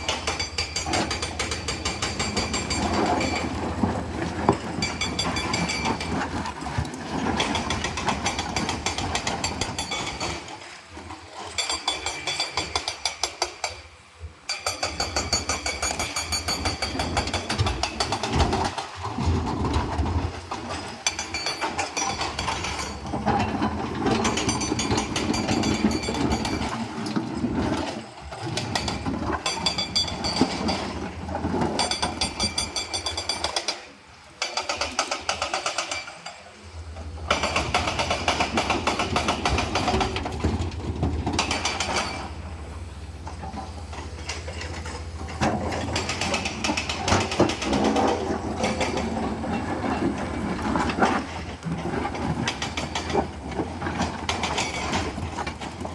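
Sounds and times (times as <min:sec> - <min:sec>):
excavator diesel engine running: 0:35.2 - 0:55.9.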